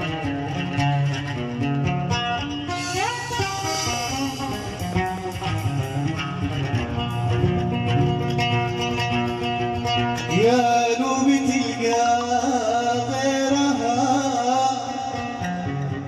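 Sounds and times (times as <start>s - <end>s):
plucked string instrument: 0.0s - 16.0s
person singing wavering line: 10.3s - 16.0s.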